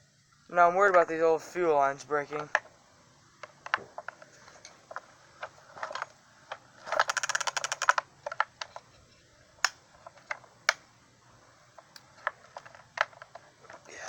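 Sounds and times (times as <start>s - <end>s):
rattling rapid clicks: 3.4s - 8.8s.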